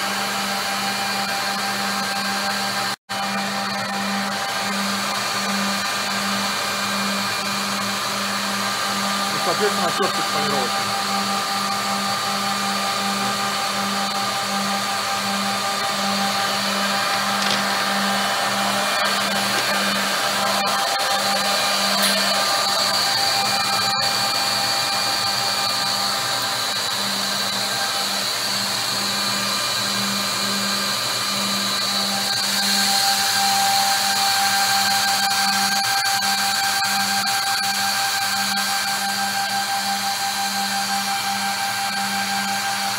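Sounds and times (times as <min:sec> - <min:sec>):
machine motor whine and hiss: 0:00.0 - 0:42.9.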